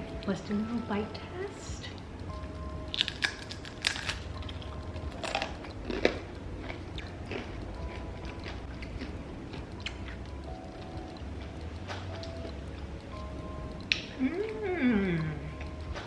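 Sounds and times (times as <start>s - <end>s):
person chewing crisp cracker: 2.8s - 14.7s.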